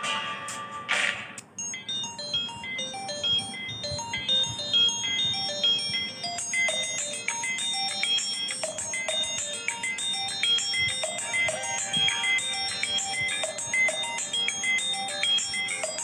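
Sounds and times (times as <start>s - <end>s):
electronic ringtone melody: 0.0s - 16.0s.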